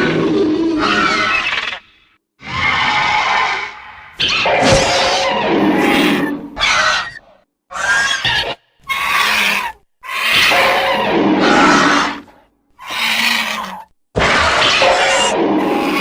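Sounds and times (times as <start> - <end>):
rough animal calls: 0.2 - 16.0.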